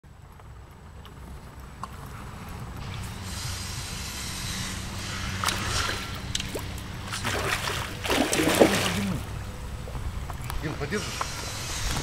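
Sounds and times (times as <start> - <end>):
steady low hum: 0.0 - 12.0
water splashing: 5.3 - 10.5.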